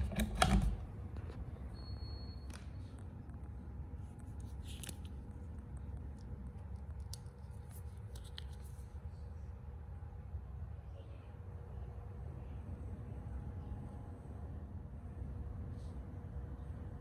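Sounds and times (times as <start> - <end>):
light clicks and scrapes: 4.0 - 9.0.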